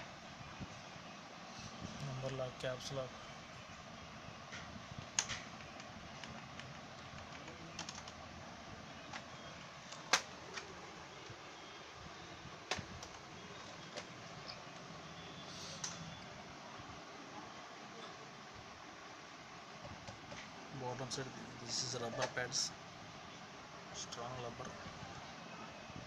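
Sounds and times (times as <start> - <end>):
mechanical keyboard keys clicking: 5.1 - 8.2.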